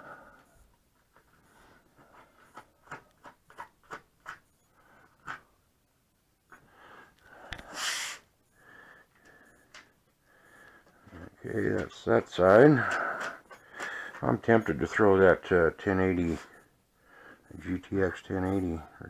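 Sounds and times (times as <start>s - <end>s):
loud breath close to microphone: 6.6s - 9.7s.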